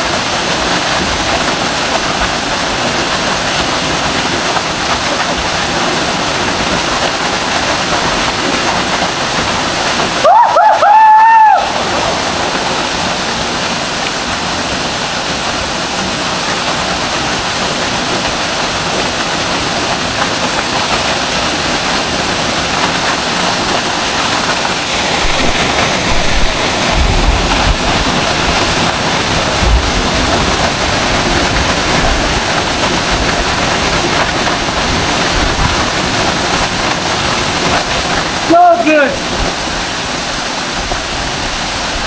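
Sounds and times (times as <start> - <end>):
waterfall rushing: 0.0 - 42.0
low rumbles: 4.1 - 14.9, 21.2 - 38.5.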